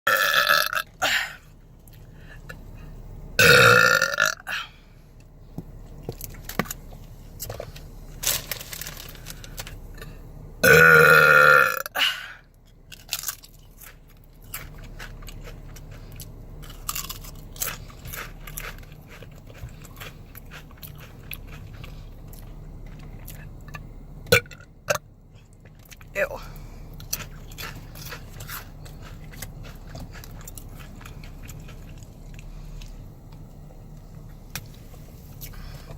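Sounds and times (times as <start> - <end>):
woman belching: 0.1 - 1.4, 3.4 - 4.7, 10.6 - 12.0
chips crunching while chewed: 12.8 - 23.8, 27.0 - 33.4.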